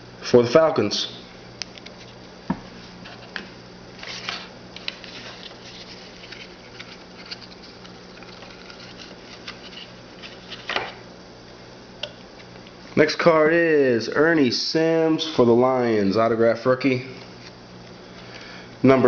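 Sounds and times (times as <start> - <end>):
trading cards clicking and rustling: 4.0 - 11.0.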